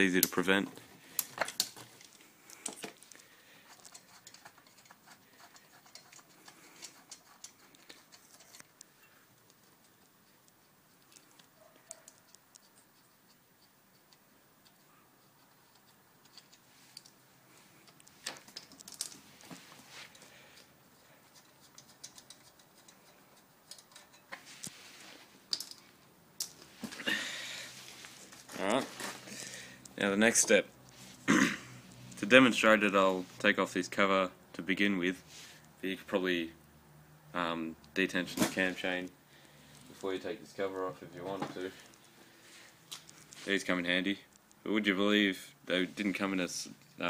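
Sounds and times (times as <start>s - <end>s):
metal parts and tools clicking: 0.0s - 19.4s, 20.5s - 24.7s, 25.5s - 26.7s.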